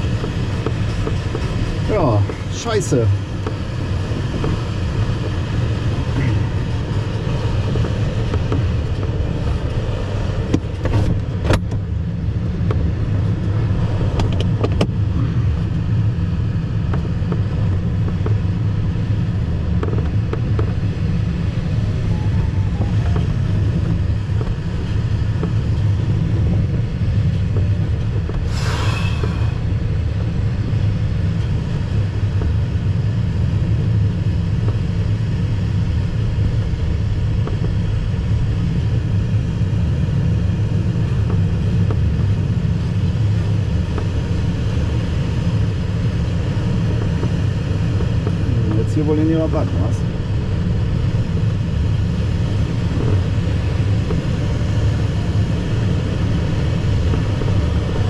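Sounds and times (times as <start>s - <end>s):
air rushing over glider: 28.2s - 32.0s
short hiss: 28.5s - 29.7s.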